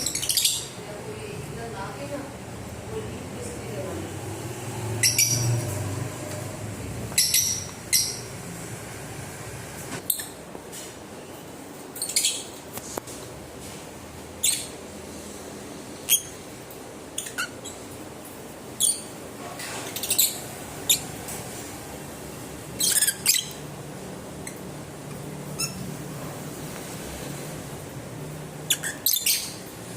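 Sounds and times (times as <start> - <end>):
lovebirds chirping: 0.0 - 2.2, 4.8 - 5.9, 7.0 - 8.5, 22.7 - 23.8, 28.6 - 29.7.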